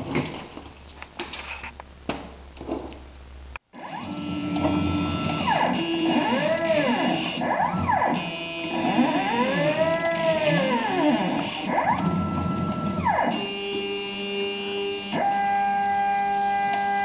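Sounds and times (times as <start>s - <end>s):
stepper motors whining: 3.8s - 17.0s.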